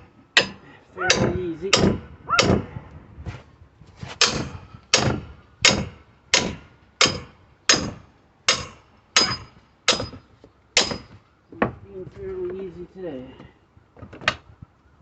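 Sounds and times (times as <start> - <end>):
sledgehammer striking pry bar: 0.4 - 2.7, 4.1 - 10.2, 10.8 - 11.2.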